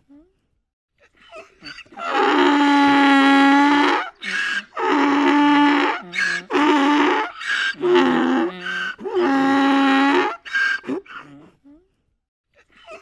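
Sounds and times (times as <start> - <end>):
donkey braying: 1.5 - 11.4.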